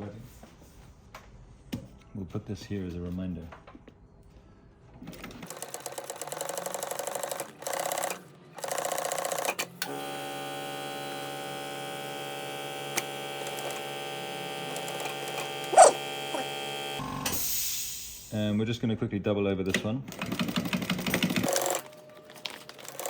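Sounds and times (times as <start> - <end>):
electrical hum: 9.9 - 17.0
sewing machine stitching: 12.7 - 17.0.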